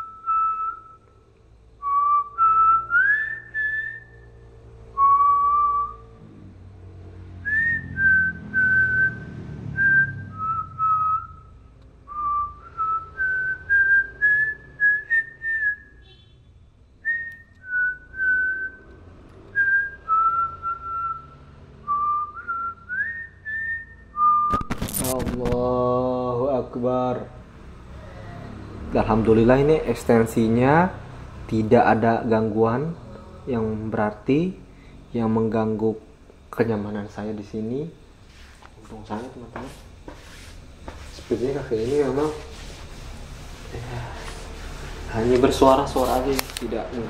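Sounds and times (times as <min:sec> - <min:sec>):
whistled notes: 0:00.0 - 0:01.2, 0:01.8 - 0:06.1, 0:07.4 - 0:16.1, 0:17.0 - 0:18.9, 0:19.5 - 0:25.2.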